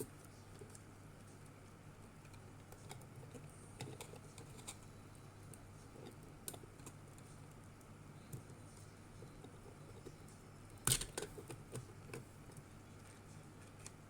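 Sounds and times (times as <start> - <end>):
low steady hum: 0.0 - 14.0
plastic parts clicking and tapping: 10.8 - 12.7.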